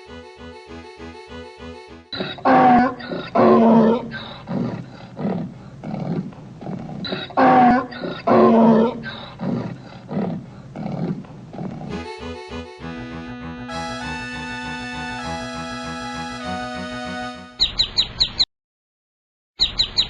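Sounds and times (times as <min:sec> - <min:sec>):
donkey braying: 0:02.2 - 0:16.5.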